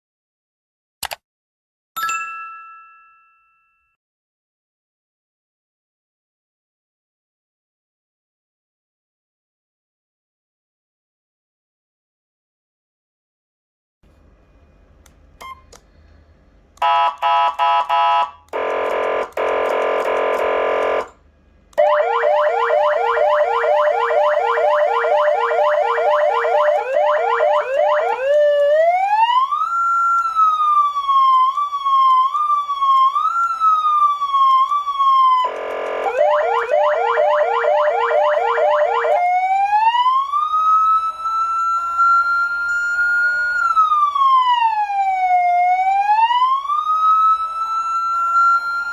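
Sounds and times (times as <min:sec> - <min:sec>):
buzzing air-horn tone: 0:16.8 - 0:21.1, 0:35.4 - 0:36.3
siren wail: 0:16.8 - 0:21.1, 0:21.8 - 0:48.9
siren yelp: 0:16.8 - 0:21.1, 0:21.8 - 0:48.9
stuttering horn blasts: 0:16.8 - 0:21.2, 0:35.4 - 0:39.2.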